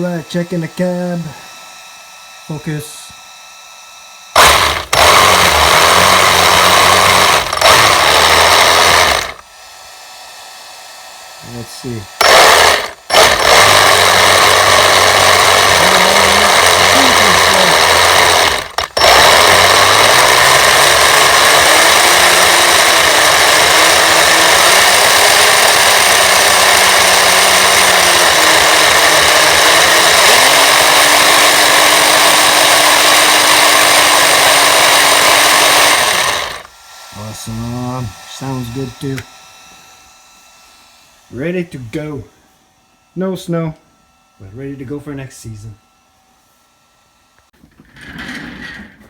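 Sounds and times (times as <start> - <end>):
electric gear and track whir: 2.5 - 9.4, 11.4 - 39.8.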